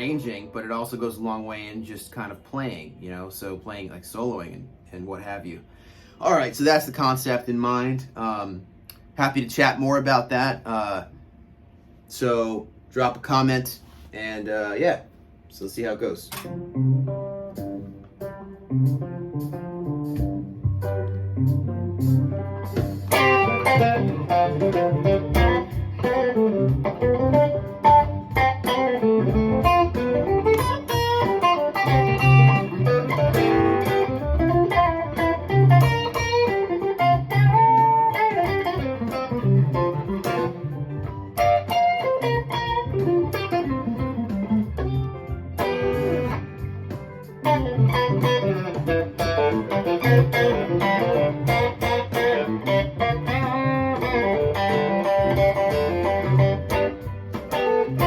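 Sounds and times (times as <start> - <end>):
backing track with bass line: 16.3 - 58.0
electric guitar playing chords: 16.3 - 58.0.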